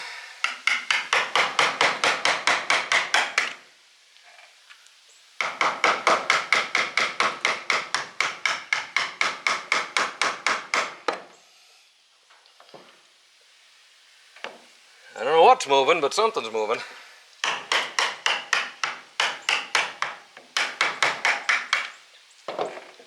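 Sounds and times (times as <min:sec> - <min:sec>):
rapid hammer blows on metal: 0:00.4 - 0:03.6, 0:17.4 - 0:21.9.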